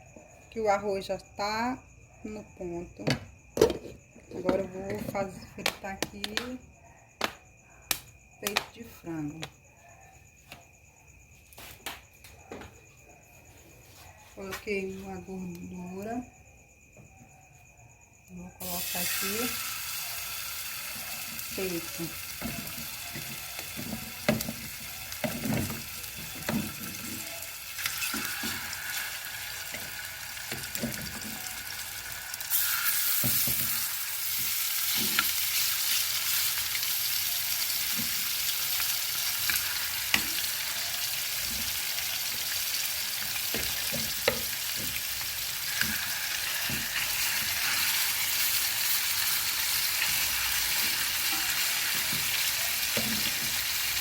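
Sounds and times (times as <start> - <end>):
chicken sizzling in a pan: 18.6 - 54.0.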